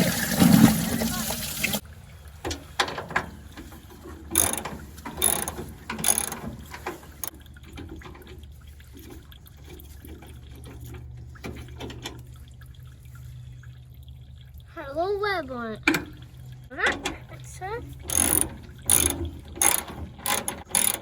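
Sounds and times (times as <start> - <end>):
ratchet wrench clicking: 4.4 - 6.5, 18.1 - 21.0.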